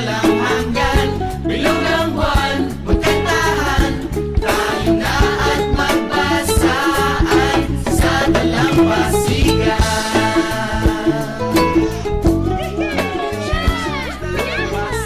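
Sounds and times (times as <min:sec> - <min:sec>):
upbeat latin-tinged music: 0:00.0 - 0:15.0.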